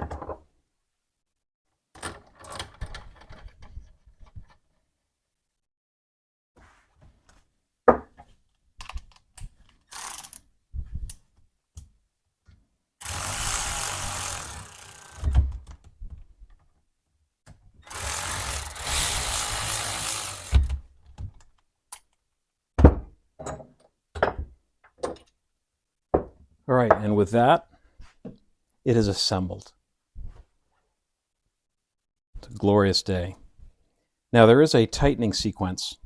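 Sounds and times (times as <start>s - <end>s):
metal parts clicking: 8.9s - 10.4s
small motor-driven tool running: 13.0s - 15.4s, 17.9s - 20.7s.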